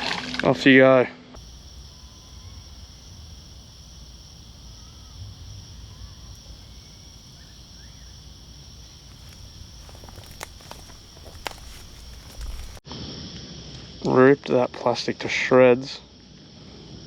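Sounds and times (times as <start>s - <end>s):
high-pitched insect chorus: 1.4s - 12.8s
low wind rumble: 1.4s - 12.8s.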